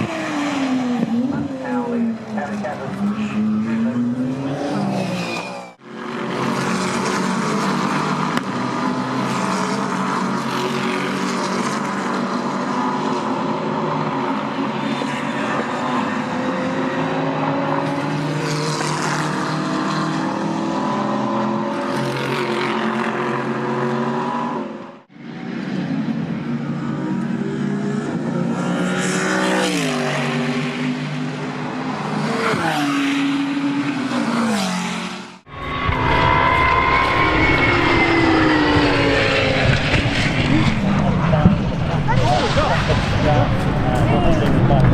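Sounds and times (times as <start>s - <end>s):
race car engines revving: 0.0s - 44.9s.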